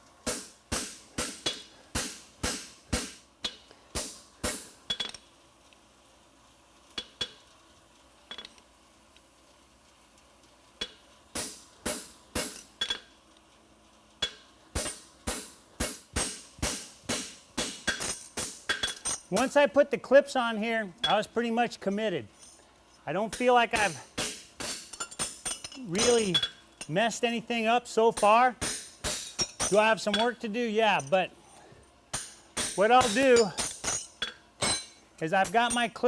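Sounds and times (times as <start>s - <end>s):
hammer ringing on horseshoe: 23.4s - 27.0s, 28.2s - 30.4s, 32.2s - 36.0s.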